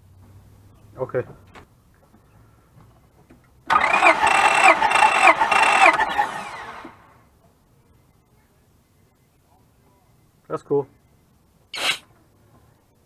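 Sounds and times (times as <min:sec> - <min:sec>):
starter cranking car engine: 0:03.7 - 0:07.1.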